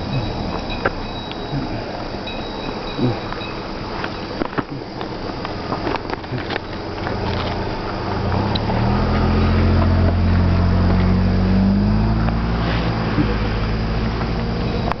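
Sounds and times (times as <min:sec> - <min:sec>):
vehicle engine passing: 0:05.1 - 0:15.0.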